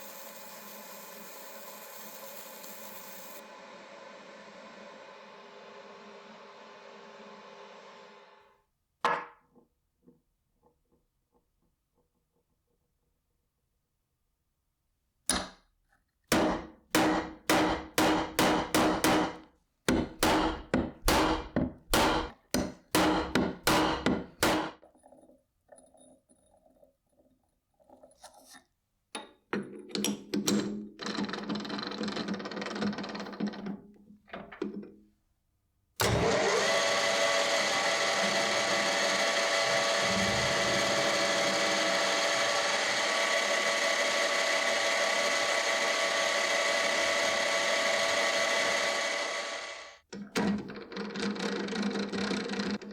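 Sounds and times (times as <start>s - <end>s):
power tool running: 0.0s - 8.4s, 36.0s - 50.0s.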